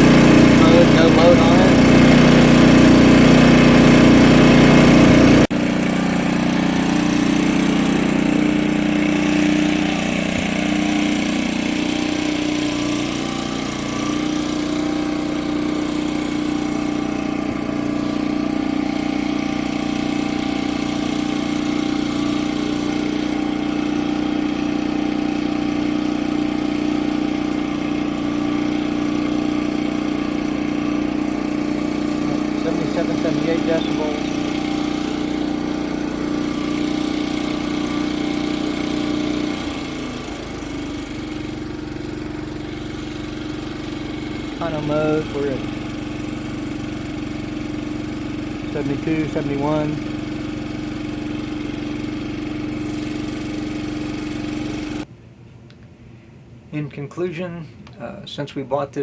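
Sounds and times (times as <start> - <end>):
generator running: 0.0 - 56.7.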